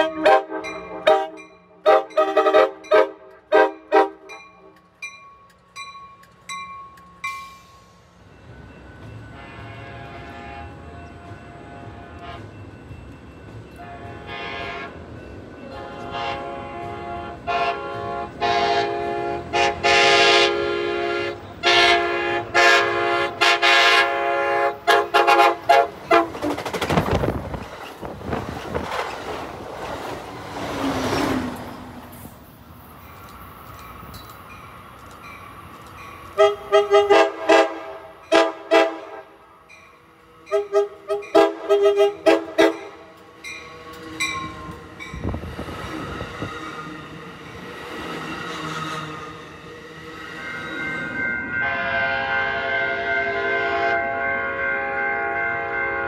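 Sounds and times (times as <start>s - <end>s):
train horn blasts: 0.0s - 4.8s, 9.3s - 12.6s, 13.8s - 15.0s, 15.6s - 26.5s, 36.4s - 39.4s, 40.4s - 44.7s, 51.1s - 56.0s
train rushing past: 0.0s - 56.0s.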